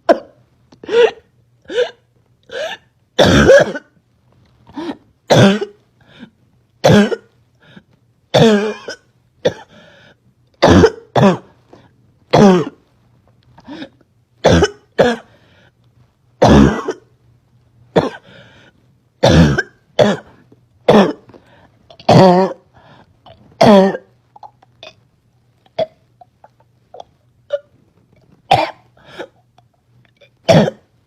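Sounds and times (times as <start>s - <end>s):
girl coughing harshly: 0.0s - 4.0s, 4.8s - 5.8s, 6.8s - 7.3s, 8.3s - 9.7s, 10.6s - 11.5s, 12.3s - 12.8s, 14.4s - 15.3s, 16.4s - 17.1s, 18.0s - 18.3s, 19.2s - 21.3s, 22.0s - 22.6s, 23.6s - 24.1s, 28.5s - 29.4s, 30.4s - 30.9s.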